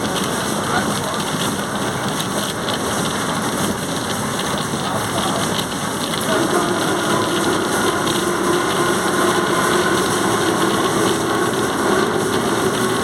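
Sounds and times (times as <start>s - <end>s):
bus road and engine noise: 0.0s - 13.0s
transmission whine: 5.0s - 13.0s.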